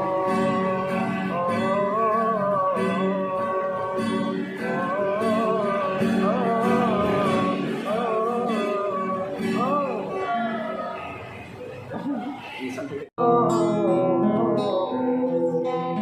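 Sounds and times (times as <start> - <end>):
acoustic guitar strumming: 0.0 - 11.6, 13.2 - 16.0
person singing wavering notes: 13.2 - 16.0.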